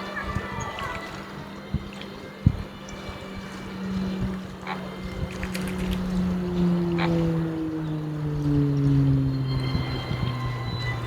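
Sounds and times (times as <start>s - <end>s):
low motor-like drone: 0.0s - 11.0s
flamingo calls: 4.6s - 5.3s, 6.9s - 7.2s.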